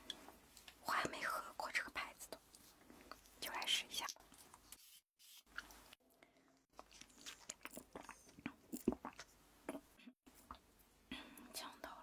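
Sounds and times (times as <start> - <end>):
chewing crisp toast: 5.5 - 10.6.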